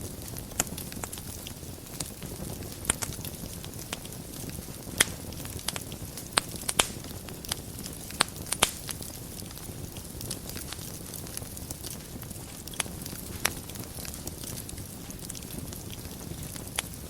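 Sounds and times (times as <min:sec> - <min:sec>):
flames rushing: 0:00.0 - 0:17.0
wood fire crackling and popping: 0:00.0 - 0:17.0.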